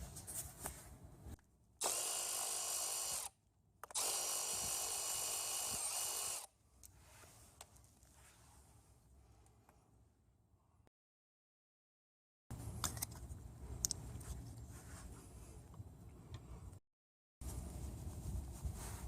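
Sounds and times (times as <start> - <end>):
power tool motor running: 1.8 - 3.3, 3.9 - 6.5.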